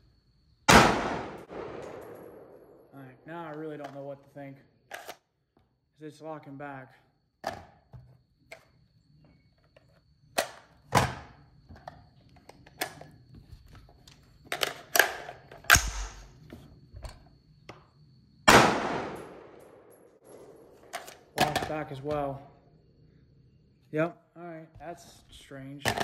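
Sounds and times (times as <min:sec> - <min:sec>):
rifle gunshots: 0:00.7 - 0:02.8, 0:18.5 - 0:19.9.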